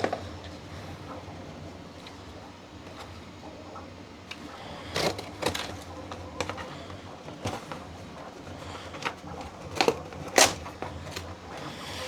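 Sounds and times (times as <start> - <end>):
steady low hum: 0.0 - 12.0
boxes being handled and unpacked: 4.9 - 11.7.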